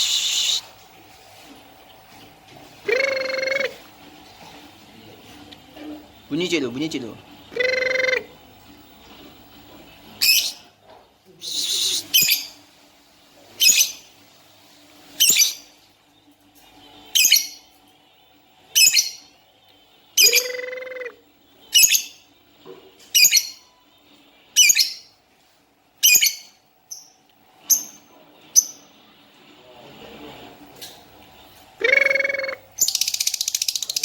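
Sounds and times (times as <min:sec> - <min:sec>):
bird shrill calls: 0:20.2 - 0:21.2.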